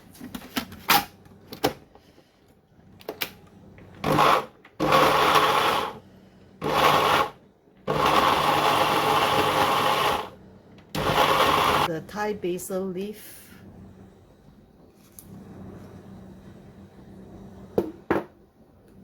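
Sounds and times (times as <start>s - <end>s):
electric blender chopping: 4.0s - 6.0s, 6.6s - 11.9s.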